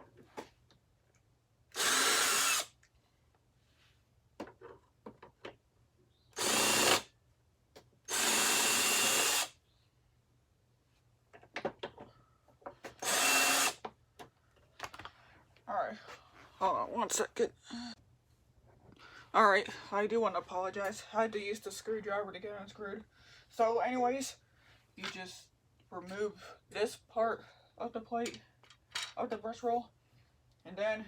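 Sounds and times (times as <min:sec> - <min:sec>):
power drill spinning: 0:01.7 - 0:02.8, 0:06.3 - 0:07.1, 0:08.1 - 0:09.6, 0:12.8 - 0:13.8.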